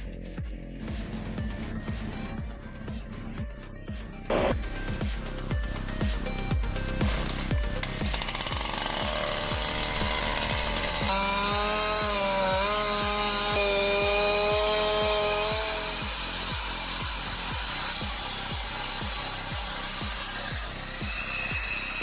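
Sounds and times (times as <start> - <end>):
background music with beat: 0.0 - 22.0
power saw cutting wood: 6.9 - 22.0.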